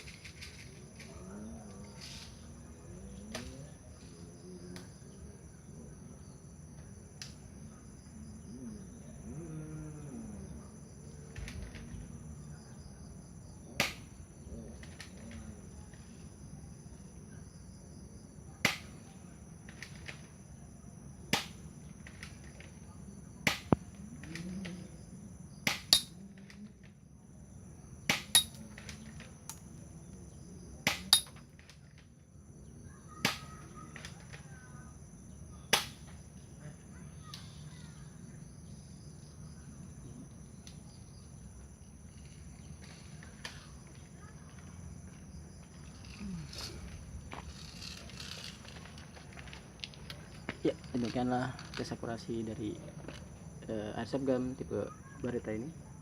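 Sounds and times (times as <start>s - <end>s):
crickets chirring: 0.0s - 56.0s
airsoft pistol shots: 23.4s - 23.7s, 25.6s - 26.1s, 28.1s - 28.6s, 30.9s - 31.3s, 35.7s - 36.0s.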